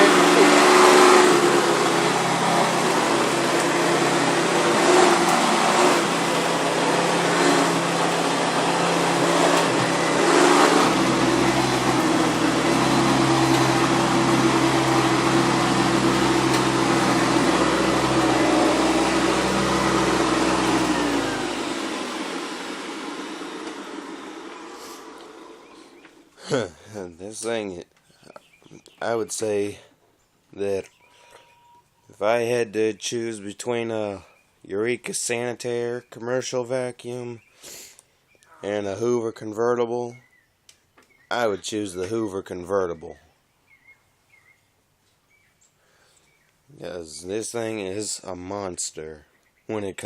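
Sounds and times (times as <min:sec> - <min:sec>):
vacuum cleaner motor hum: 0:00.0 - 0:26.2.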